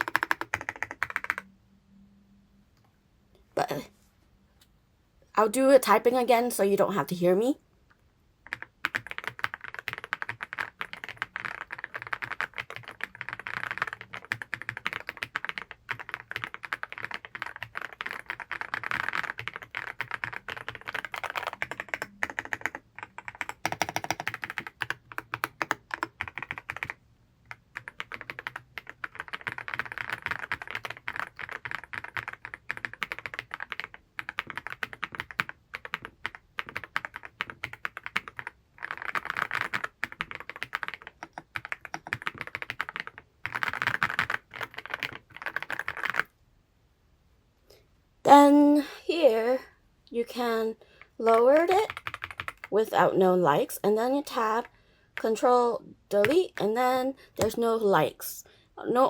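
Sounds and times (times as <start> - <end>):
mechanical keyboard typing: 0.0 - 1.5, 8.4 - 46.3, 51.2 - 55.5, 56.2 - 58.2.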